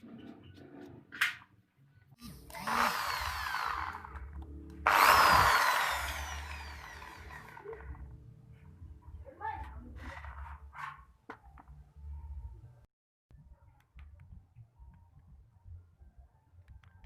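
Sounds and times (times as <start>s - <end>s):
small power tool running: 2.2s - 8.1s.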